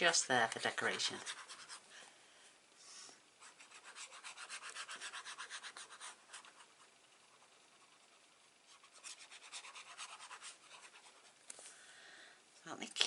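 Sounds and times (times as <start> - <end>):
paper being rubbed: 0.7 - 1.8, 3.4 - 11.4.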